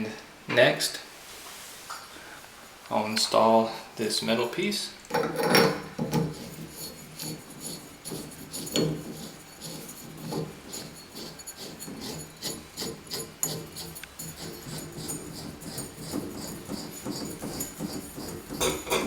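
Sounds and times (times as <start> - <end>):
metal scraping rubs: 5.1 - 19.0.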